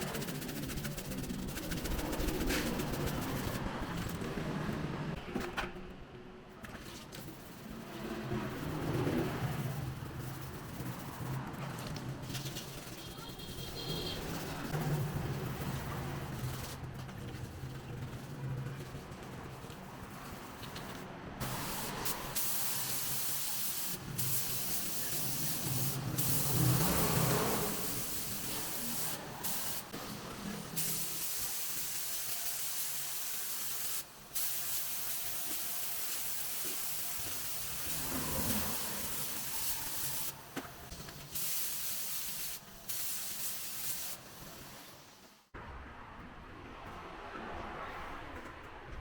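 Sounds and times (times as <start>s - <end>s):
air spray gun hissing: 21.4s - 45.1s.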